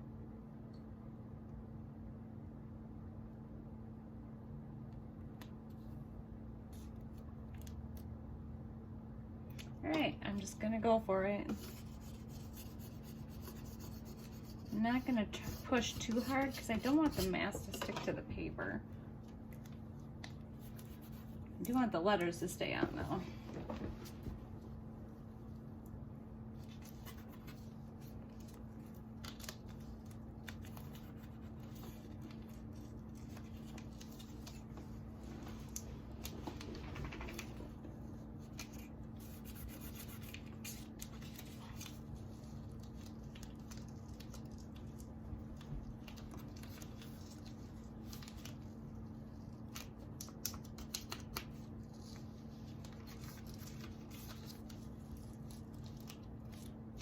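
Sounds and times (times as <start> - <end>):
steady low hum: 0.0 - 57.0
hands rubbing tape on board: 11.5 - 17.3.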